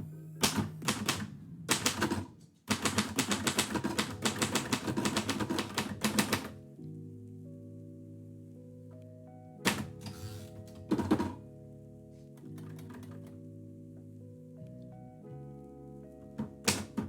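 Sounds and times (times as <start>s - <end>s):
typewriter keystrokes: 0.4s - 6.6s, 9.6s - 11.4s, 12.5s - 13.3s, 16.4s - 17.0s.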